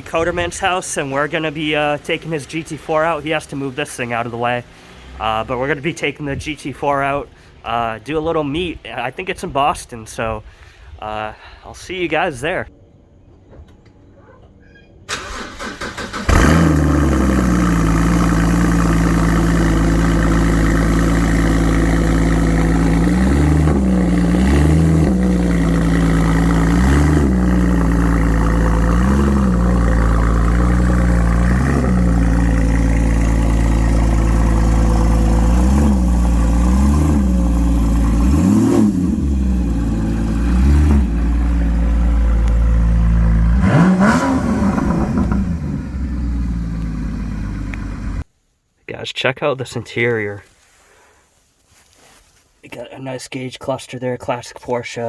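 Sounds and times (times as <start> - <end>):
car engine revving: 15.1 - 48.2.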